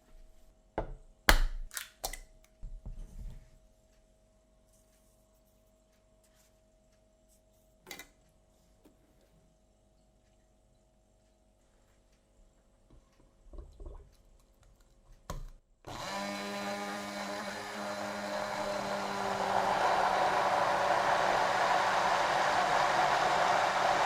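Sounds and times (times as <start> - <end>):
blender motor running: 15.9 - 24.0.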